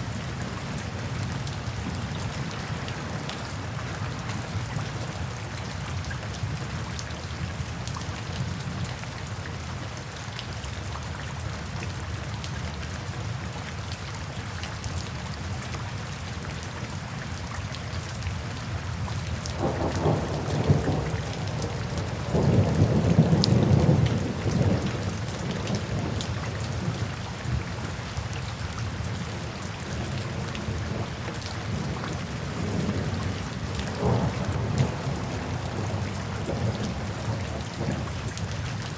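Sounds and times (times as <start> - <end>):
rain falling: 0.0 - 38.9
thunder rumbling: 19.6 - 26.2, 32.6 - 38.4.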